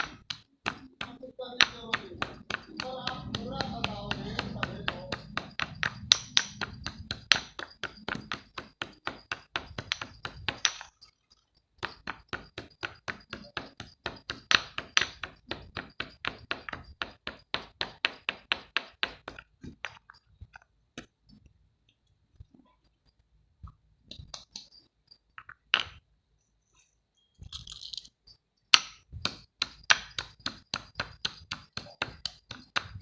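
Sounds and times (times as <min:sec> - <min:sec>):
rapid hard taps on slate: 0:00.0 - 0:11.1, 0:11.8 - 0:20.2, 0:28.8 - 0:33.0.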